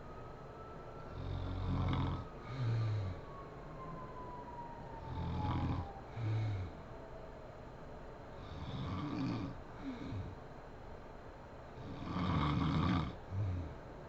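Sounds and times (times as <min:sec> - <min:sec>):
quiet breathing: 0:01.0 - 0:04.0, 0:04.9 - 0:07.3, 0:08.2 - 0:14.0
woman snoring: 0:01.2 - 0:03.2, 0:08.4 - 0:10.4, 0:11.8 - 0:13.8.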